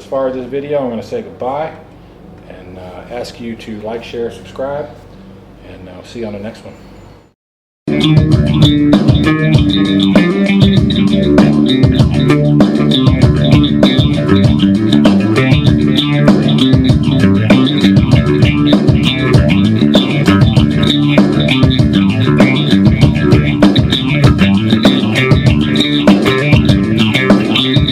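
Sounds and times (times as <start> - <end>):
music with bass and guitar: 7.9 - 27.9.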